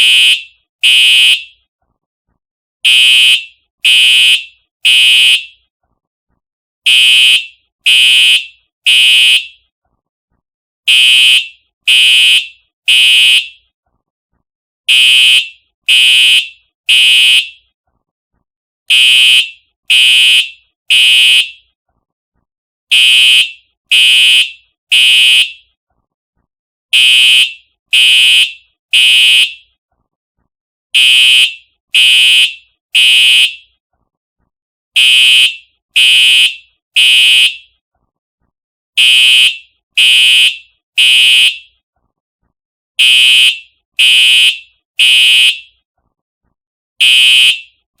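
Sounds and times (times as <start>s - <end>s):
fire alarm horn blasts: 0.0s - 1.6s, 2.8s - 5.6s, 6.9s - 9.6s, 10.9s - 13.6s, 14.9s - 17.6s, 18.9s - 21.7s, 22.9s - 25.7s, 26.9s - 29.7s, 31.0s - 33.7s, 35.0s - 37.8s, 39.0s - 41.8s, 43.0s - 45.8s, 47.0s - 47.8s.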